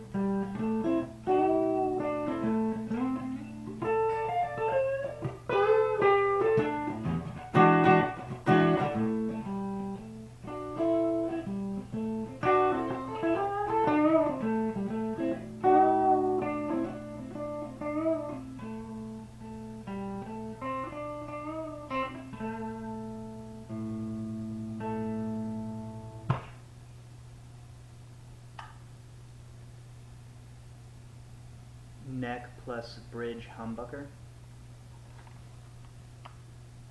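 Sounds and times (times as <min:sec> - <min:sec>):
clean electric guitar: 0:00.0 - 0:26.7
steady low hum: 0:00.0 - 0:36.9.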